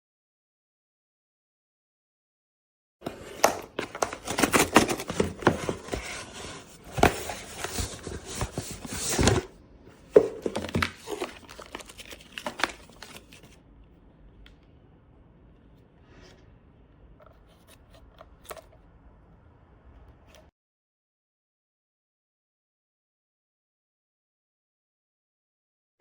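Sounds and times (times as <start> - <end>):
paper crinkling and tearing: 3.1 - 9.5, 10.4 - 13.6.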